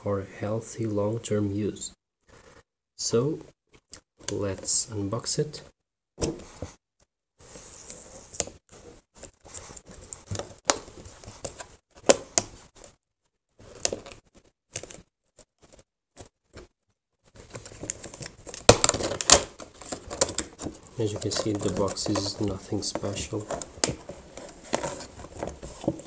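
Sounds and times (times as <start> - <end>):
box taps and scrapes: 17.4 - 26.0.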